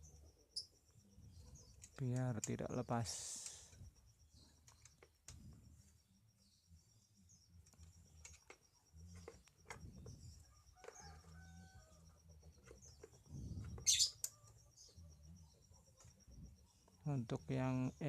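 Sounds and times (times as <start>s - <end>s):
insect trill: 0.0s - 18.0s
high-pitched bird-like chirp: 12.9s - 15.0s.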